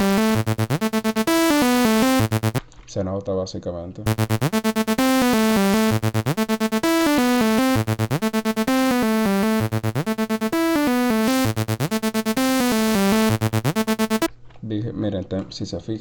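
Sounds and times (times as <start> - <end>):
distorted electronic synth loop: 0.0 - 2.6, 4.1 - 14.3.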